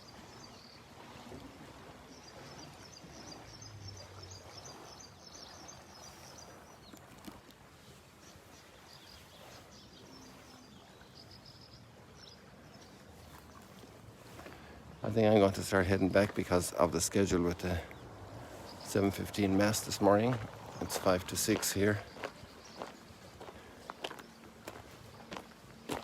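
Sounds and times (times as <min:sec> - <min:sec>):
soft background noise wash: 0:00.0 - 0:26.0.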